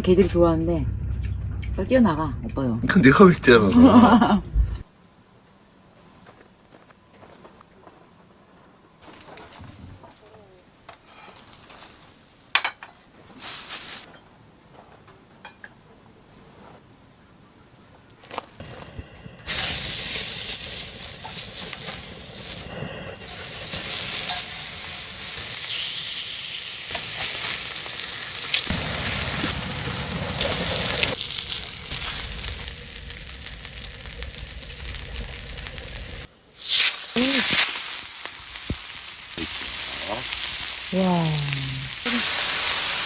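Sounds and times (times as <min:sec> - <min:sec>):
food sizzling in a pan: 0:19.5 - 0:43.0.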